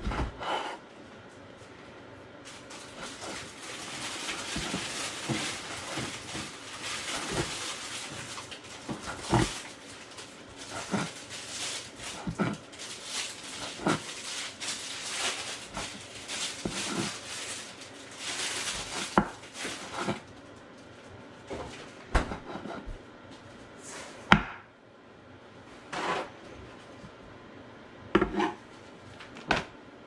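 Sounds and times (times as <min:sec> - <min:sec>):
knife cutting on cutting board: 0:25.9 - 0:26.3, 0:28.2 - 0:28.6.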